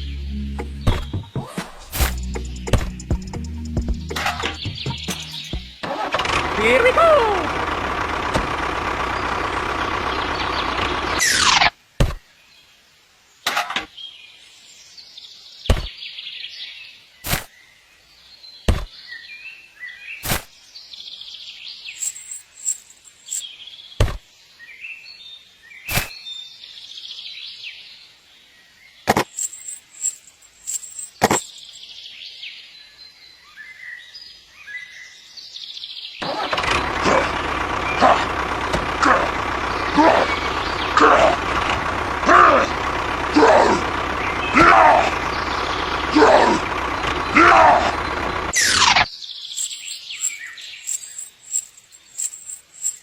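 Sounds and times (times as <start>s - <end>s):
birds chirping: 0.0s - 1.5s, 3.9s - 5.8s, 6.4s - 11.4s, 13.9s - 33.0s, 36.8s - 53.0s
steady mechanical noise: 5.4s - 11.2s, 36.6s - 48.7s.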